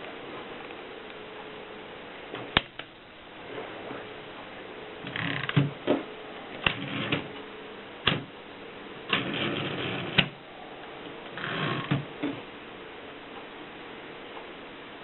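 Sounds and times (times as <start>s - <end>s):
typewriter mechanism rattling: 6.6s - 7.3s.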